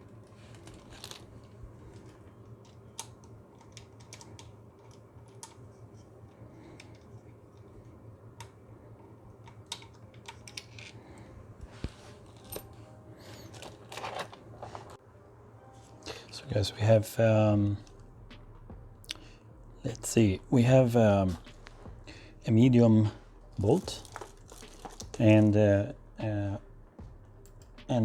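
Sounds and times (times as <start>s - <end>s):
faint low hum: 0.0s - 28.0s
hand tools clicking and tapping: 0.5s - 8.6s, 9.4s - 15.0s.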